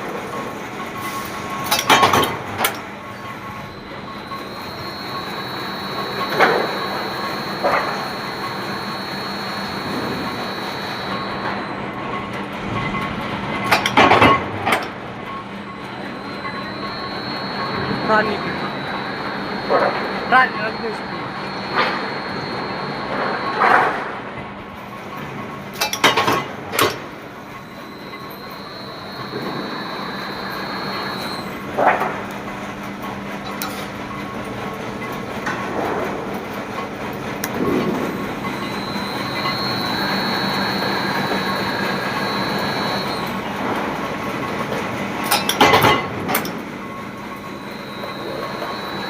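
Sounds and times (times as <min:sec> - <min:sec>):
mechanical rumble: 0:01.3 - 0:49.0
thin high whine: 0:02.6 - 0:12.3, 0:15.4 - 0:25.9, 0:26.7 - 0:32.2, 0:37.5 - 0:44.6, 0:45.3 - 0:49.0.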